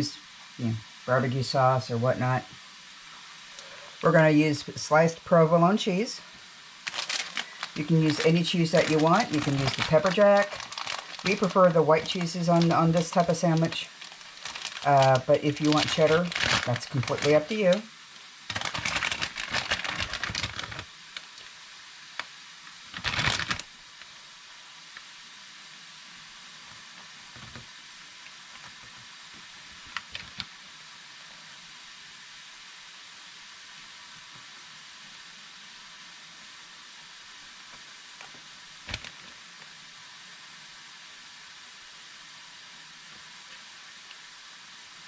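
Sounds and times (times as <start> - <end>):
food sizzling in a pan: 0.0 - 45.0
rustling: 6.8 - 21.5, 22.8 - 24.1, 38.2 - 39.4.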